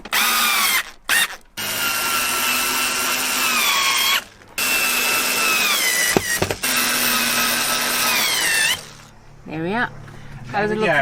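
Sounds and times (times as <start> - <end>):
drill-driver whining driving screws: 0.1 - 9.1
sharp knocks: 6.1 - 6.8.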